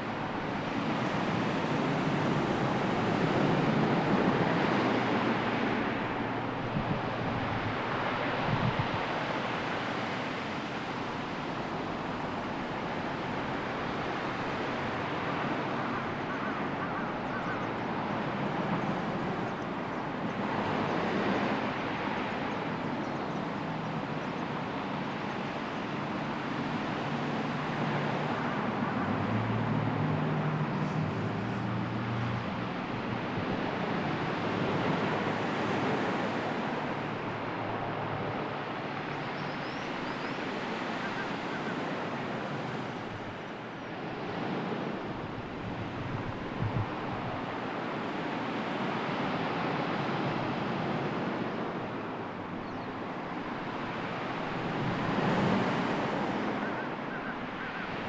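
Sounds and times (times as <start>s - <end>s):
sea waves washing on shore: 0.0s - 58.0s
wind buffeting microphone: 1.2s - 9.3s, 45.0s - 47.6s.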